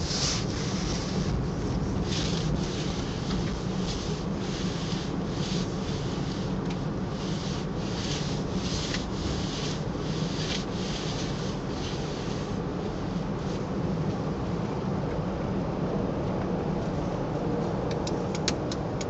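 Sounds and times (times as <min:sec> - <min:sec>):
car driving drone: 0:00.0 - 0:19.0
fabric swishing rub: 0:02.0 - 0:12.6.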